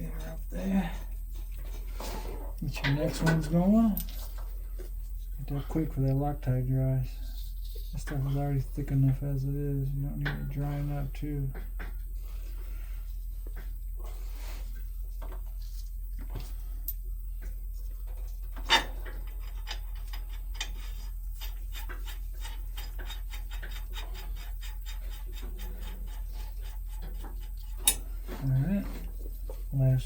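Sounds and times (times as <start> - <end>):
steady low hum: 0.0 - 30.0
metallic ticking and scraping: 18.4 - 29.9.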